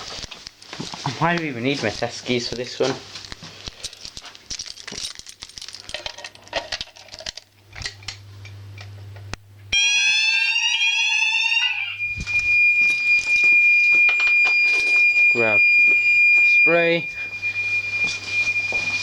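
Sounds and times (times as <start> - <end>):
fire alarm sounding: 9.7 - 19.0
low hum: 10.6 - 19.0.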